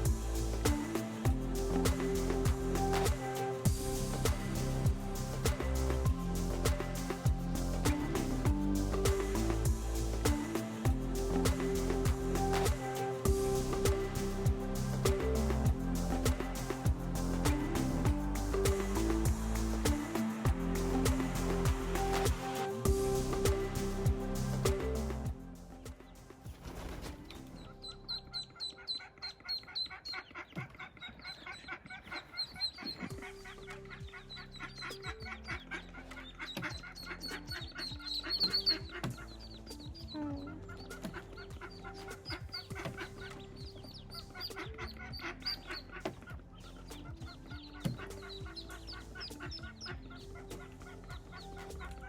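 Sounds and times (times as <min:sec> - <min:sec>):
ducklings peeping: 0:27.8 - 0:40.1, 0:40.7 - 0:51.9.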